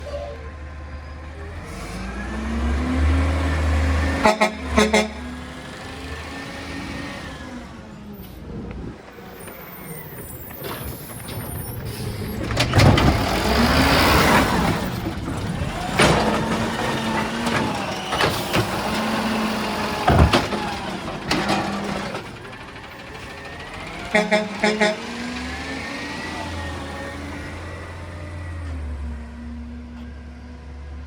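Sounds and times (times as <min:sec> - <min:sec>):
truck diesel engine running: 0:00.0 - 0:29.8
truck horn honks: 0:04.0 - 0:05.6, 0:24.0 - 0:25.4.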